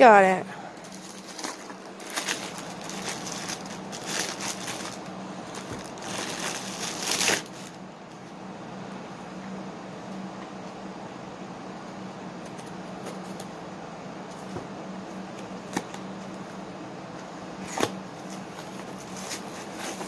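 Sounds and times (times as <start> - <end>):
low steady hum: 0.0 - 20.0
packaging crinkling: 0.8 - 7.8.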